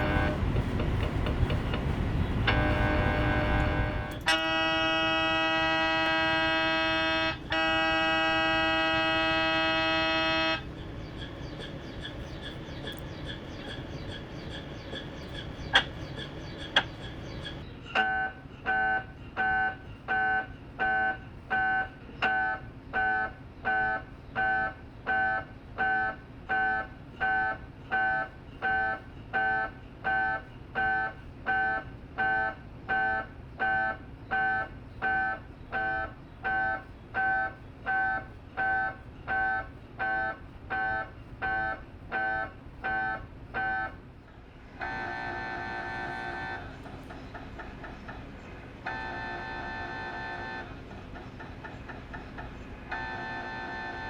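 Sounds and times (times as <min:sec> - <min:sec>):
mri scanner hum: 0:44.8 - 0:54.0.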